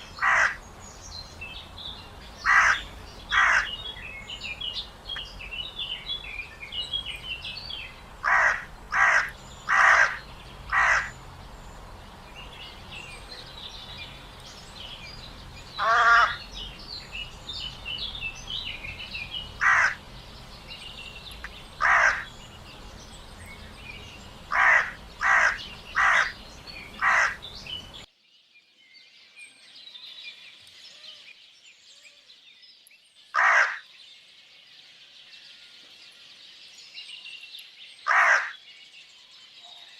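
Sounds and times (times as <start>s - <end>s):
crows cawing: 0.0s - 0.6s, 2.4s - 3.8s, 8.2s - 11.2s, 15.7s - 16.5s, 19.6s - 20.0s, 21.8s - 22.4s, 24.5s - 26.4s, 27.0s - 27.5s, 33.4s - 33.9s, 38.1s - 38.6s
small birds chirping: 0.0s - 39.9s.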